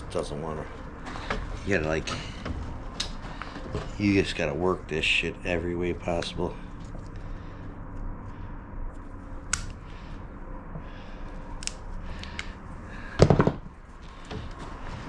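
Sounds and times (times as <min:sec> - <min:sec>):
wire stripper metallic clicks: 0:09.5 - 0:09.8.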